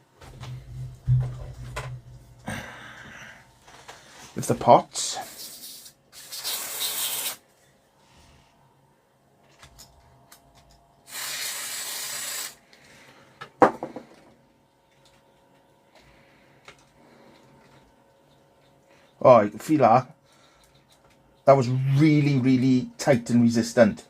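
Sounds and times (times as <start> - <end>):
aerosol spray burst: 5.3 - 7.4, 11.1 - 12.6.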